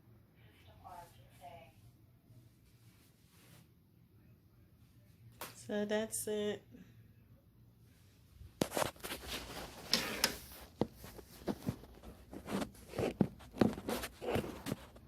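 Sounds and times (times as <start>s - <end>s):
rustling while handling object: 8.6s - 15.0s.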